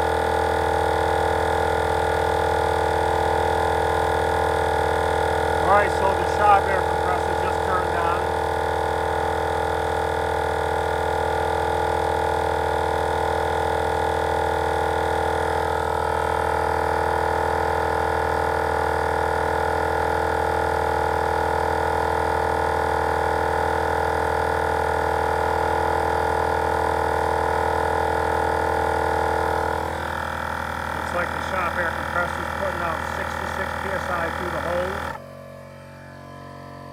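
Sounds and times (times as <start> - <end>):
air compressors humming: 0.0 - 14.3, 21.6 - 35.8.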